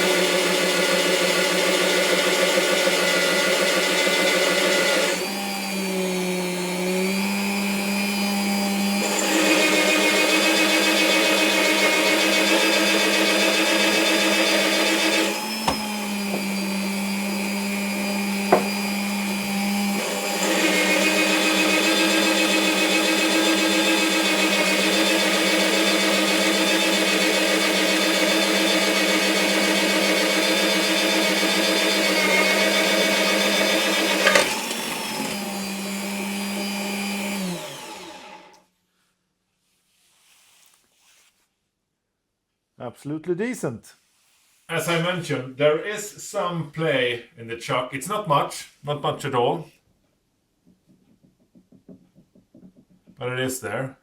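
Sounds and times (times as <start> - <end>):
drill motor humming: 0.0 - 38.6.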